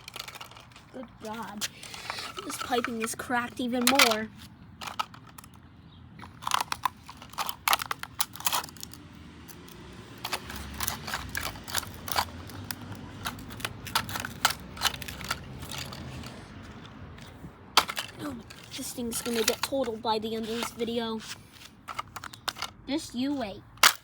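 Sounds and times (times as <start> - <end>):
plastic parts cracking and snapping: 0.0 - 5.6, 6.2 - 16.3, 17.8 - 20.0, 23.8 - 24.0.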